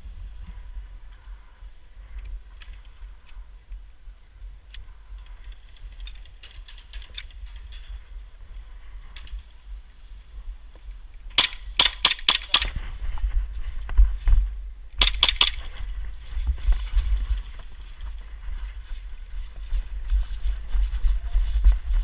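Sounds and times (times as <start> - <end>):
steady low rumble: 0.0 - 22.0
airsoft gun shots: 11.4 - 12.8, 15.0 - 15.8.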